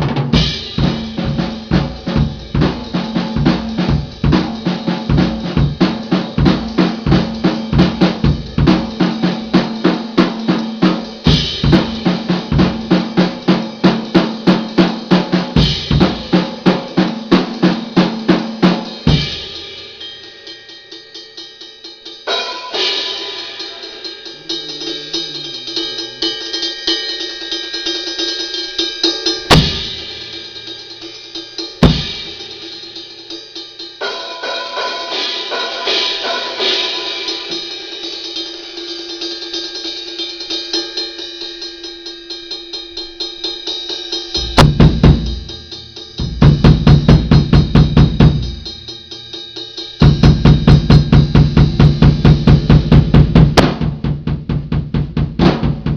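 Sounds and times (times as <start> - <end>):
fast drum strokes: 0.0 - 55.9
cymbal wash: 0.3 - 54.1
sharp loud drum hits: 29.5 - 30.4, 31.8 - 32.4, 44.4 - 48.9, 50.0 - 55.9.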